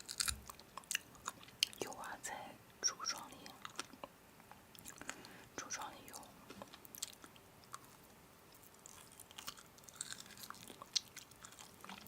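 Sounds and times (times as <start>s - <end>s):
person chewing: 0.0s - 1.8s, 3.1s - 4.1s, 4.7s - 5.4s, 6.1s - 12.0s.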